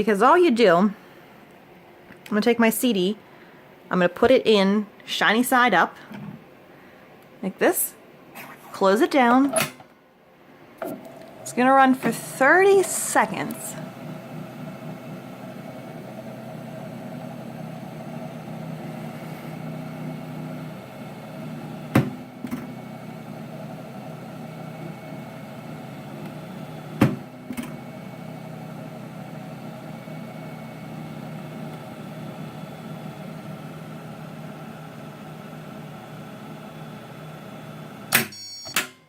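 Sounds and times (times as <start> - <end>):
disc repair machine motor hum: 10.8 - 38.2.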